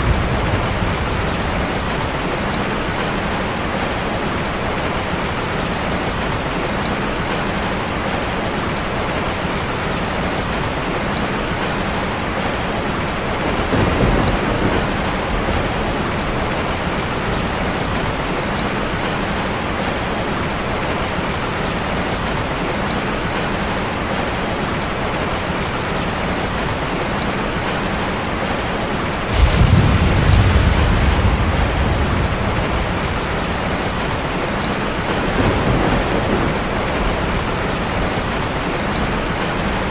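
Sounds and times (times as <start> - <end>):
thunder rumbling: 0.0 - 4.0, 13.3 - 18.4, 29.2 - 39.9
heavy rain: 0.0 - 39.9.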